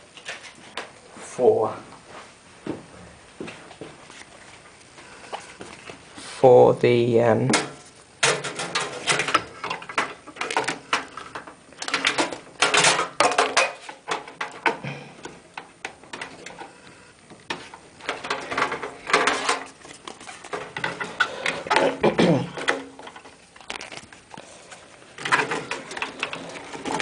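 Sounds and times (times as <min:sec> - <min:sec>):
plastic cable rustling and clicking: 0:07.6 - 0:27.0.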